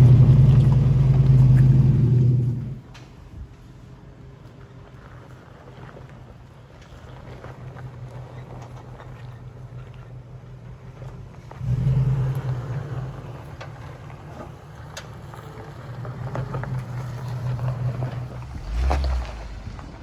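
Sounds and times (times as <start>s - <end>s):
vehicle engine running: 0.0s - 20.0s.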